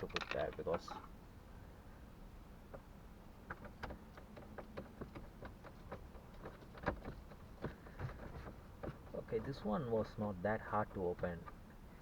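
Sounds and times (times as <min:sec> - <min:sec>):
small parts clicking and tapping: 0:00.0 - 0:01.0.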